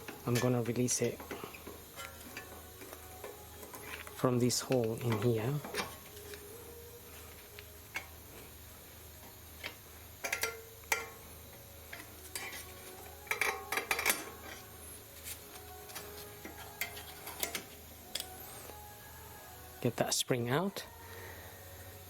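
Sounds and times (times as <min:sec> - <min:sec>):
metallic clicks and scrapes: 0:00.0 - 0:08.4, 0:09.2 - 0:18.8.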